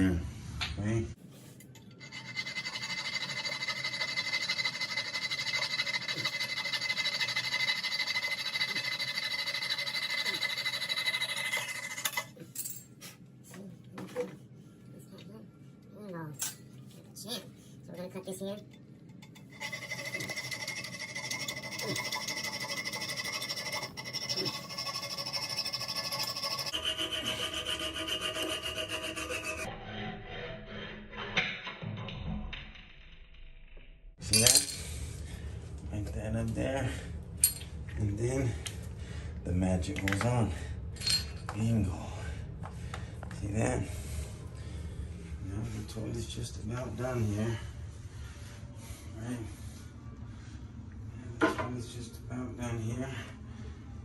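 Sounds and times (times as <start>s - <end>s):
small saw rasping through metal: 1.9s - 12.3s, 19.2s - 31.2s.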